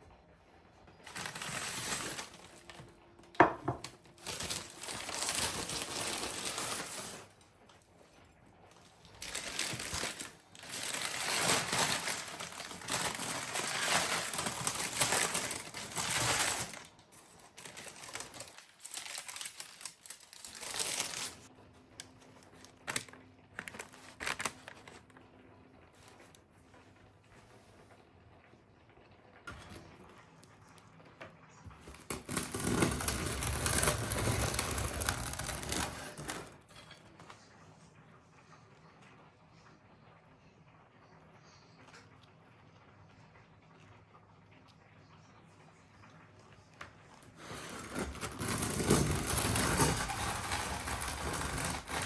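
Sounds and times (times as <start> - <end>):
crinkling and rustling: 0.9 - 28.0, 29.4 - 37.5, 46.6 - 52.0.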